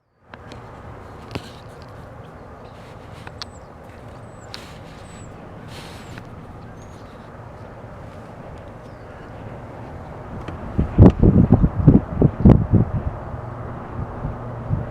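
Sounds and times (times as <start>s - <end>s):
bird chirping: 0.0s - 10.3s
sharp clicks: 0.3s - 7.7s
freight train rumbling: 0.3s - 14.9s.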